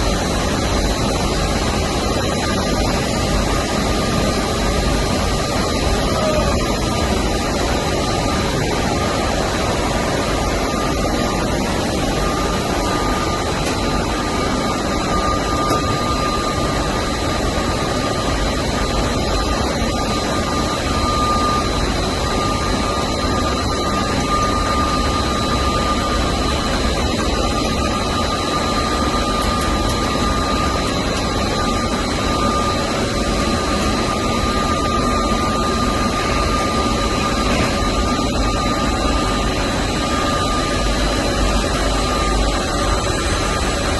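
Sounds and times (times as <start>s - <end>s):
fan and drive noise: 0.0s - 43.9s
thin steady whines: 0.0s - 43.9s.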